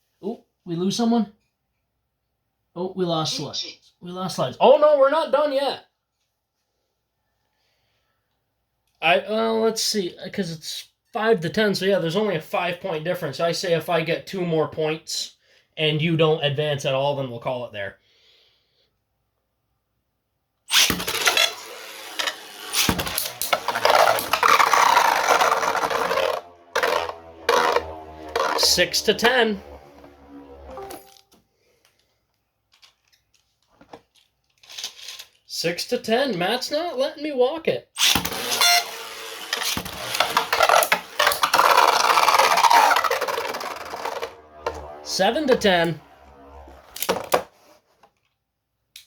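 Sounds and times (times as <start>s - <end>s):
spinning tops scraping and clashing: 20.7s - 29.1s, 38.0s - 47.4s
spinning tops launched: 20.7s - 31.2s, 38.0s - 47.5s.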